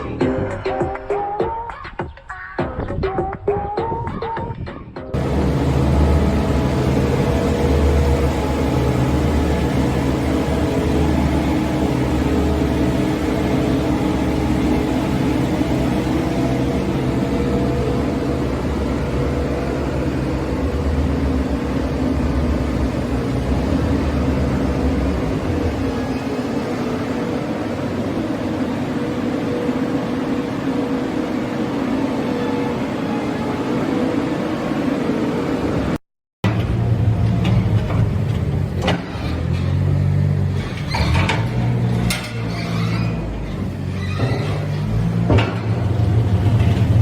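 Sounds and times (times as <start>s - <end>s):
machine humming with steady tones: 5.2s - 36.0s.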